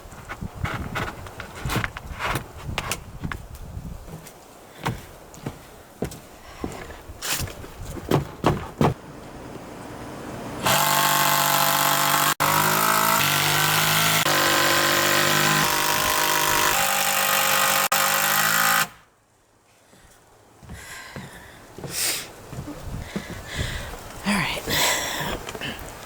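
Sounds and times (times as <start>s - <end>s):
sharp knocks: 8.1s - 9.0s
cordless drill driving screws: 10.6s - 19.0s.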